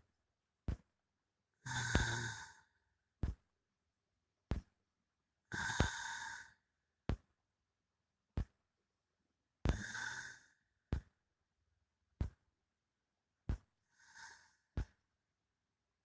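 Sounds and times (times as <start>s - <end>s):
person snoring: 1.6s - 2.7s, 5.5s - 6.6s, 9.7s - 10.5s, 14.0s - 14.6s.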